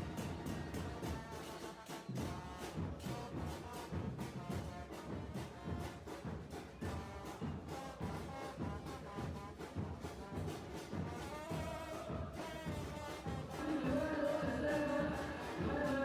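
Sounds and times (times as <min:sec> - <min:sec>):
brass-led music with steady beat: 0:00.0 - 0:16.0.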